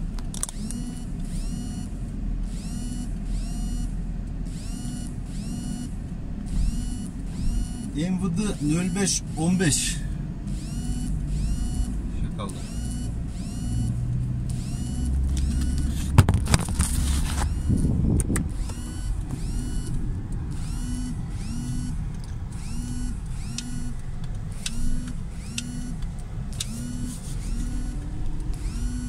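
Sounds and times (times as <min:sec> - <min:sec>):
engine and road rumble: 0:00.0 - 0:29.0
rising electronic tone: 0:06.5 - 0:09.1, 0:10.5 - 0:12.0, 0:12.6 - 0:16.1, 0:17.0 - 0:26.0, 0:26.6 - 0:29.0
sharp clicks: 0:14.4 - 0:29.0.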